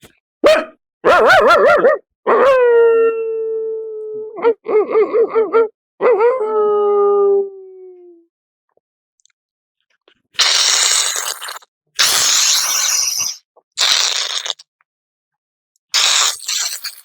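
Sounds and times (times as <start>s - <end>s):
man imitating dog howling: 2.3s - 8.2s.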